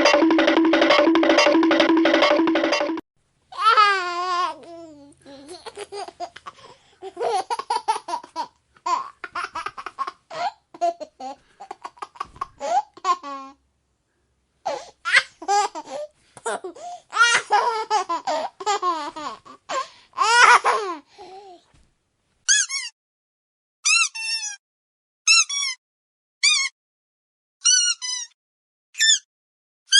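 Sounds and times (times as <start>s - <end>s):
baby giggling: 5.4s - 13.4s.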